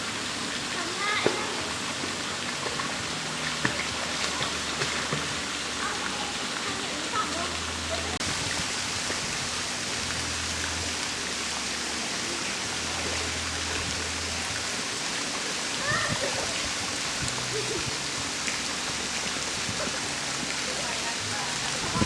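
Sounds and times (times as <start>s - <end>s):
faint voices: 0.7s - 9.4s, 11.8s - 22.0s.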